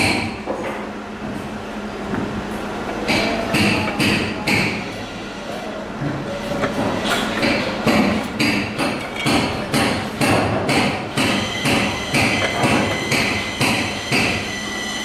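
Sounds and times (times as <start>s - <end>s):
metal hammering: 0.0s - 0.7s, 3.0s - 4.9s, 6.7s - 14.6s.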